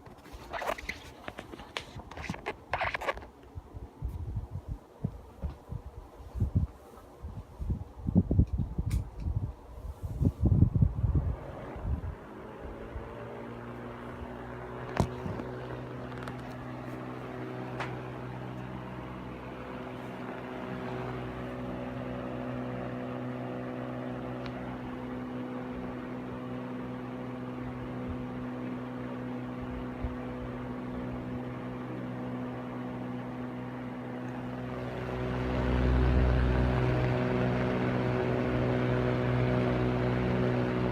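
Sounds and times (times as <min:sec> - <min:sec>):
fan motor hum: 0:00.0 - 0:40.9
rush of moving air: 0:04.0 - 0:13.3.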